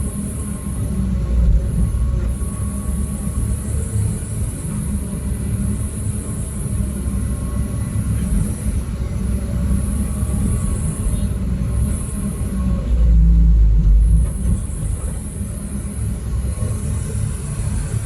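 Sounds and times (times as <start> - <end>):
diesel machinery rumbling: 0.0 - 18.0.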